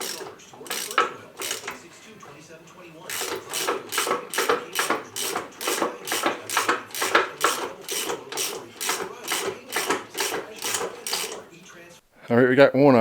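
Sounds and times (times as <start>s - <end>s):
ratchet wrench clicking: 0.0s - 2.4s, 3.1s - 11.6s.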